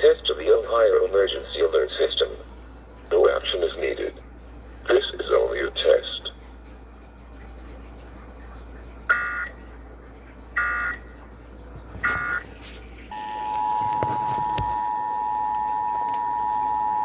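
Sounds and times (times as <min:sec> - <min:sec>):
two-tone attention signal: 0:09.1 - 0:09.6, 0:10.6 - 0:11.0, 0:12.0 - 0:12.4, 0:13.1 - 0:17.0.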